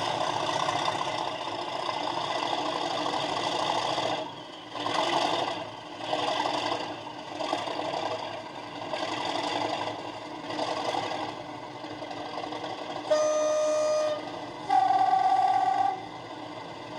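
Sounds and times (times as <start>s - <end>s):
diesel locomotive engine sound: 0.0s - 16.9s
two-tone locomotive horn: 13.0s - 16.5s.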